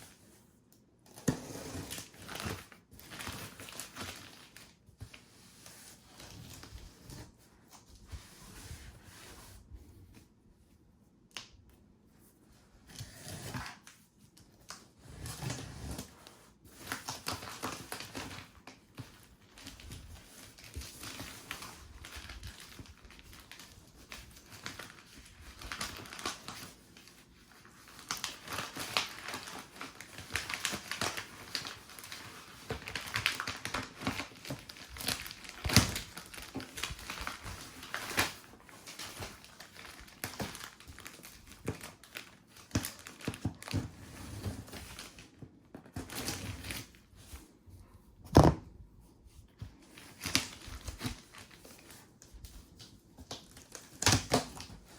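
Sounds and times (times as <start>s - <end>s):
plastic bags crinkling: 16.8s - 43.8s.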